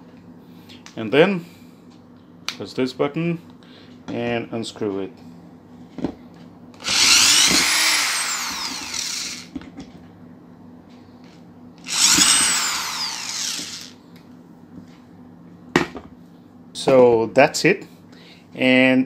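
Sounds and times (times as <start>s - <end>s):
electric screwdriver whirring: 6.8s - 9.5s, 11.8s - 14.0s.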